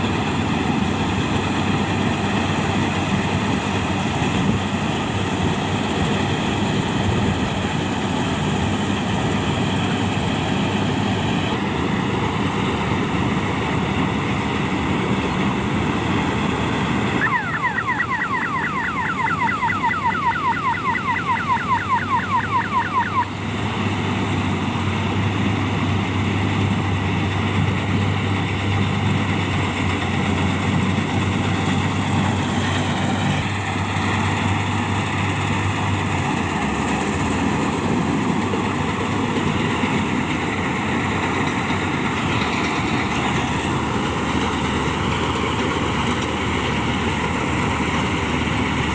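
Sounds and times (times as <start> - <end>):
heavy machinery engine running: 0.0 - 48.9
electronic siren horn whooping: 17.2 - 23.4.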